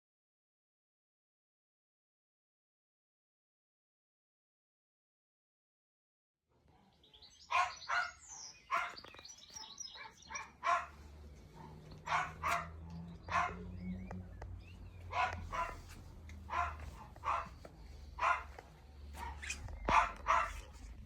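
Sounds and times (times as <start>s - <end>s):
dog barking: 7.5s - 14.0s, 14.9s - 21.0s.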